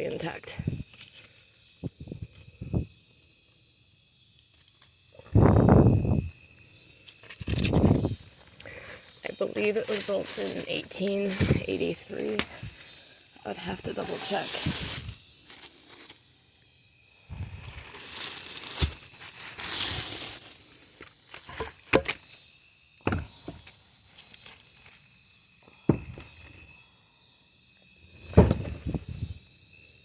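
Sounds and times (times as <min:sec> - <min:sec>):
leaves and vines rustling: 0:00.0 - 0:03.0, 0:04.4 - 0:22.5, 0:23.2 - 0:26.8
insect chirping: 0:00.0 - 0:30.0.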